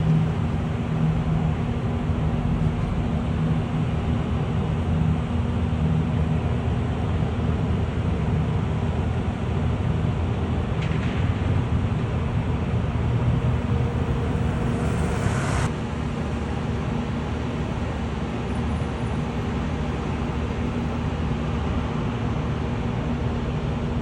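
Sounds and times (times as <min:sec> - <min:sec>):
diesel engine low drone: 0:09.8 - 0:18.4.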